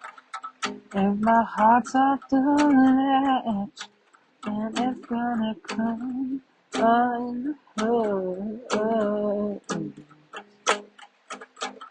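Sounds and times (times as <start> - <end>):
acoustic guitar: 0.0 - 11.9
woman singing wordless phrases: 1.0 - 3.8, 4.4 - 10.0
short sharp clicks: 8.7 - 11.9.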